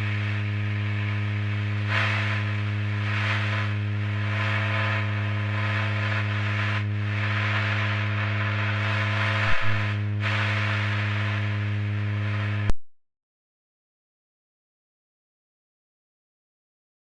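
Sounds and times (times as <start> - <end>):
low electrical hum: 0.0 - 12.8.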